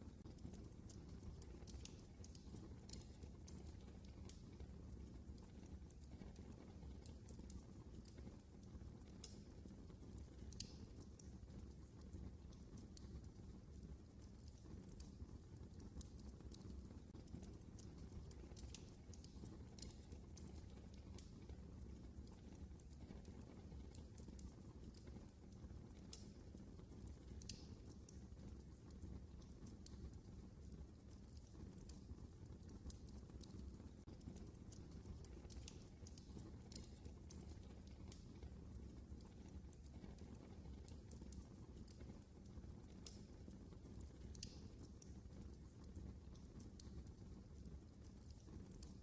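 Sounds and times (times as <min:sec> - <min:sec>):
fire crackles and pops: 0:00.0 - 0:49.0
low rumble of flames: 0:00.0 - 0:49.0.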